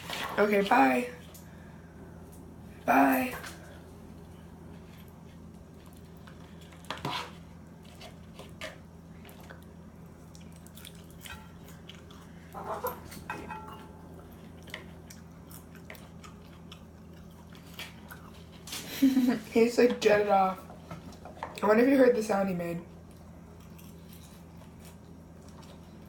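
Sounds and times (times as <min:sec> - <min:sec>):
chewing salad: 0:04.1 - 0:18.9, 0:22.9 - 0:26.0.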